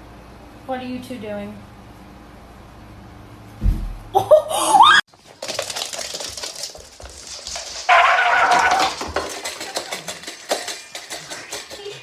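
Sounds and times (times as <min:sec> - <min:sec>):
pet animal drawn-out cry: 0:07.9 - 0:08.9.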